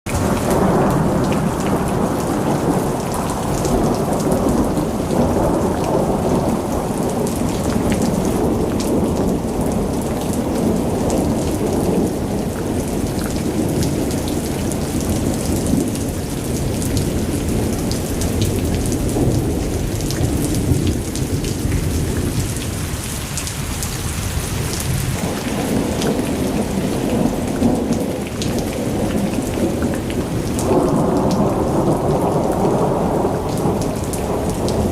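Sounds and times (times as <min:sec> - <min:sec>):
heavy rain pouring: 0:00.1 - 0:34.9.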